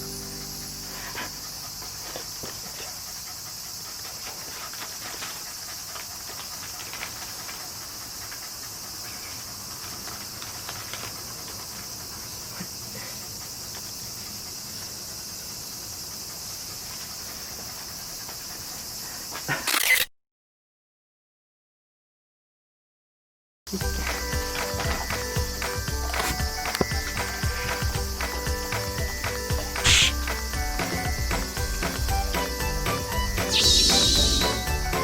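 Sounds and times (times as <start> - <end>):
steady high hiss: 0.0 - 3.7, 23.7 - 35.0.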